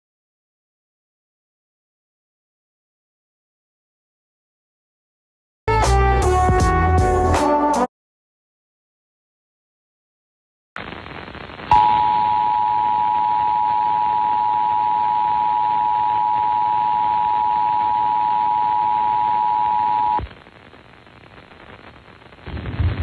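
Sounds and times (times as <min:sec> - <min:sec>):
radio static hiss: 0:10.8 - 0:23.0
two-tone alert tone: 0:11.7 - 0:20.2.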